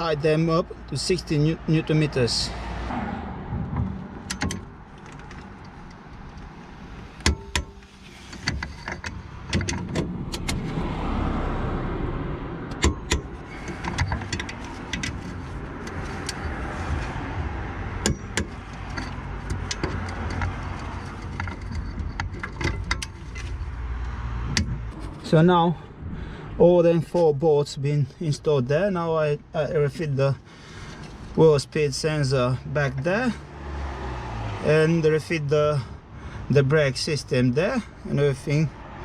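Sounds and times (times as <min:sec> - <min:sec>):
steady low rumble: 0:02.9 - 0:28.4.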